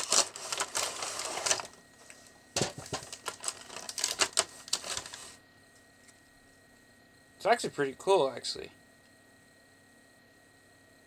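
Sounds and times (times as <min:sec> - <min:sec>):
plastic packaging rustling: 0:00.0 - 0:05.4.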